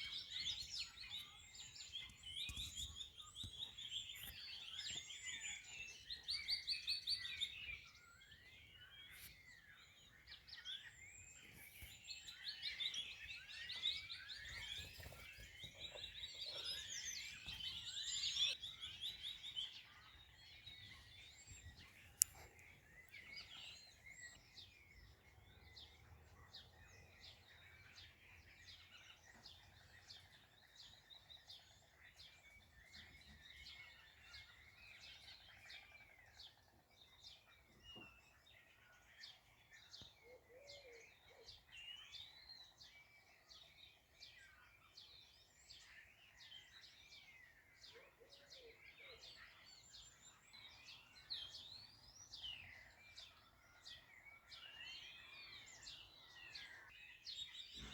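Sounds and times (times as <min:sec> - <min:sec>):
small birds chirping and singing: 0:00.0 - 0:57.9
lower bird calls: 0:47.3 - 0:57.9.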